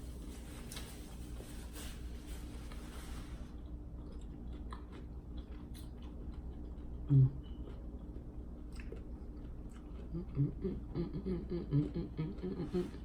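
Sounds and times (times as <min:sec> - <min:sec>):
chewing and biting food: 0:03.5 - 0:11.1.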